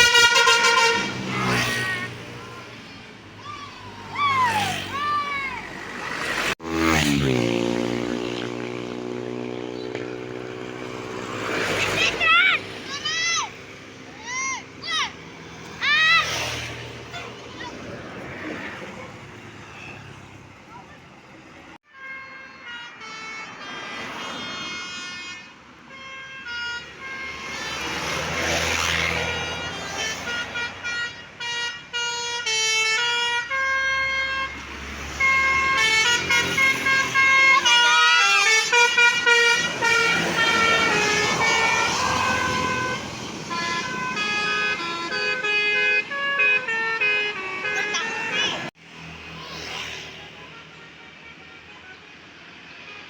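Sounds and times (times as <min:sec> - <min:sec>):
multi-tone bus horns melody: 0:00.0 - 0:03.2, 0:21.8 - 0:48.8, 0:50.0 - 0:53.0
buses passing: 0:00.0 - 0:53.0.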